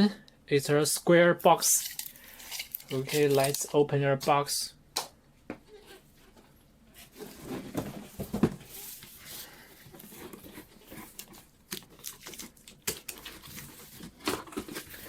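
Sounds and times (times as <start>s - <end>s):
cardboard box rustling: 7.0s - 12.6s.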